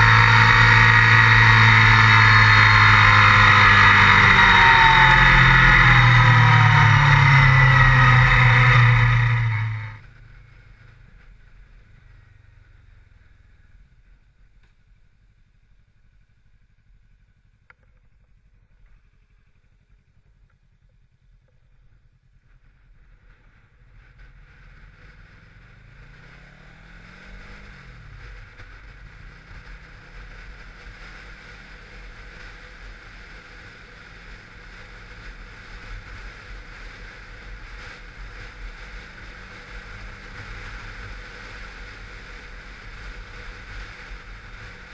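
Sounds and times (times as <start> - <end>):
wind noise: 0.0 - 10.0
motorcycle engine revving: 0.0 - 12.8, 23.4 - 44.9.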